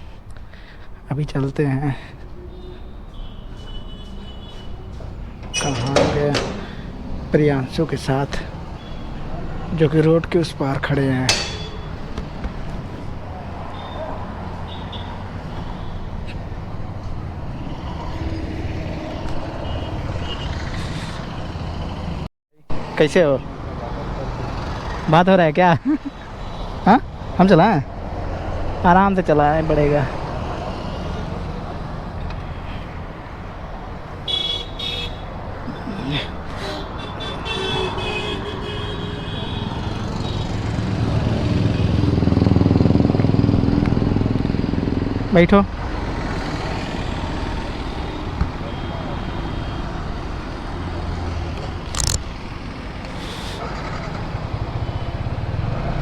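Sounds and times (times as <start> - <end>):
road traffic: 0.0 - 56.0
vehicle horn beeping: 2.4 - 5.9, 8.8 - 9.4, 11.3 - 12.1, 13.7 - 16.4, 19.5 - 20.6, 34.2 - 35.4, 36.6 - 40.6, 47.9 - 50.2
motorcycle engine rumbling: 4.2 - 17.6
engine rumble: 4.3 - 25.1, 40.0 - 56.0.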